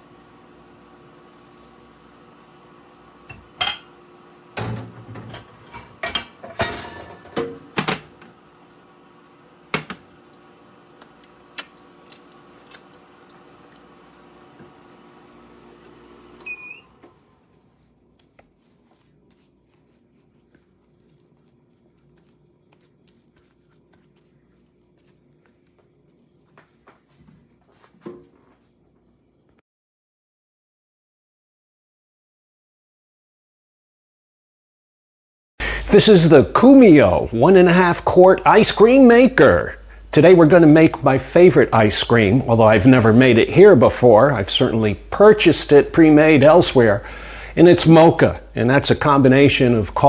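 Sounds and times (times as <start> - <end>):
machine hum: 0.0 - 27.0
dishes and utensils clinking: 3.3 - 3.9, 4.6 - 8.1.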